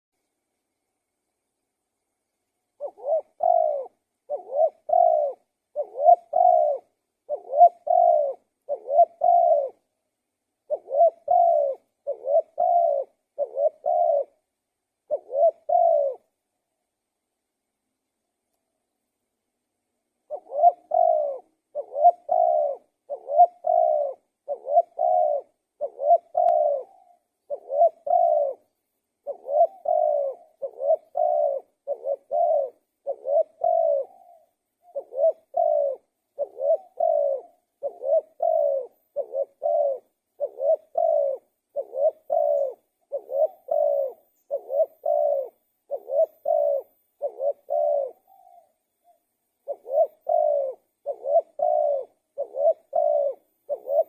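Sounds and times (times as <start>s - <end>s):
dove cooing: 2.8s - 16.5s, 20.2s - 54.0s.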